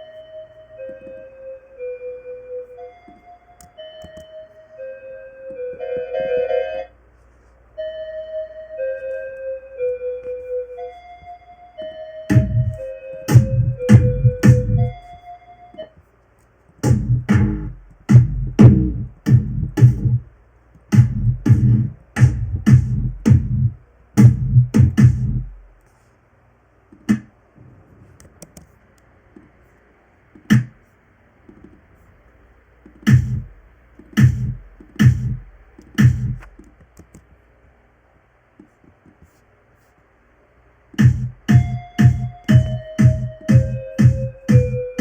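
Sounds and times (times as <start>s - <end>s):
electronic drum beat: 12.3s - 15.1s, 16.8s - 20.3s, 20.9s - 25.7s, 27.0s - 27.4s, 30.4s - 30.8s, 32.9s - 36.7s, 41.0s - 45.0s.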